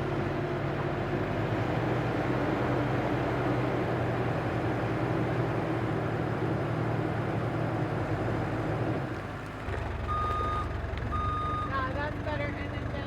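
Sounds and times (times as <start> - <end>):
telehandler engine running: 9.7 - 13.0.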